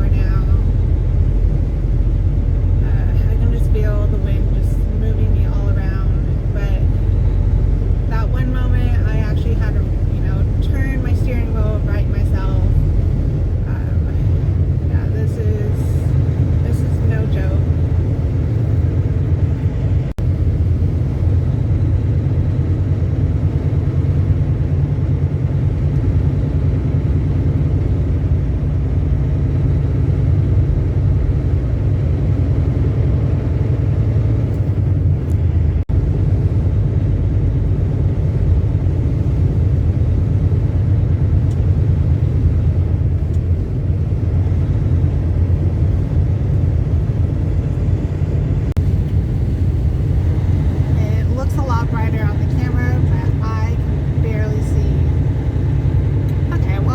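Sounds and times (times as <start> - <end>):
truck engine and road rumble: 0.0 - 56.9.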